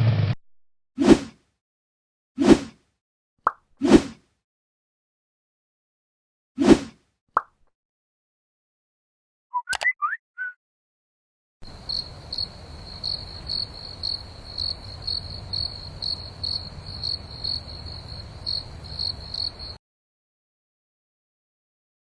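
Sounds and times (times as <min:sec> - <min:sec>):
cricket chirping: 0:11.6 - 0:19.8.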